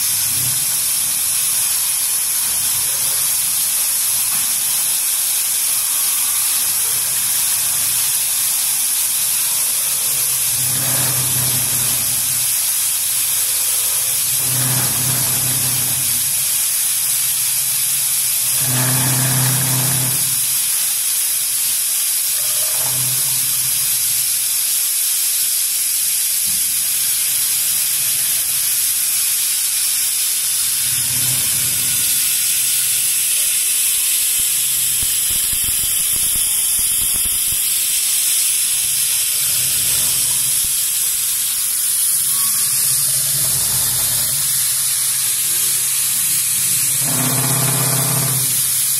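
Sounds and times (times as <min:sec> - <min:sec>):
router spindle high-pitched hiss: 0:00.0 - 0:48.9
low machine hum: 0:42.1 - 0:48.9.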